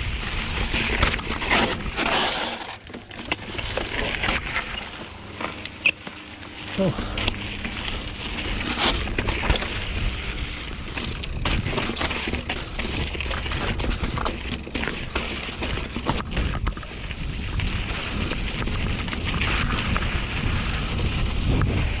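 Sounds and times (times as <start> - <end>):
wind rumble on microphone: 0.0 - 2.4, 7.2 - 22.0
bike clicking and rattling: 0.0 - 22.0
bike tyre noise: 0.0 - 22.0.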